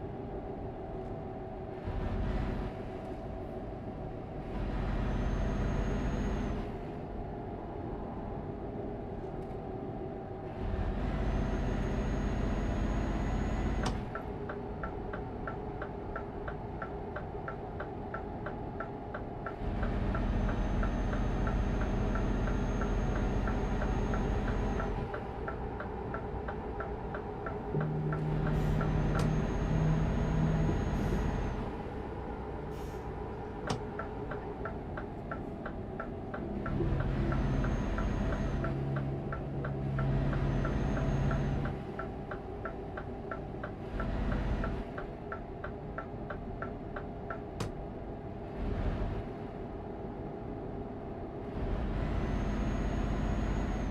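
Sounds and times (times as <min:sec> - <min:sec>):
vehicle engine rumble: 0:00.0 - 0:53.9
turn signal ticking: 0:13.7 - 0:32.6, 0:33.2 - 0:48.2.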